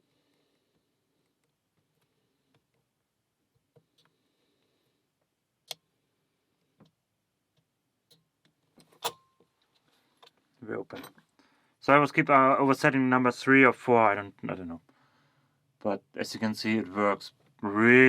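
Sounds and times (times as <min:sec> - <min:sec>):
lock pins clicking: 0:08.1 - 0:09.4.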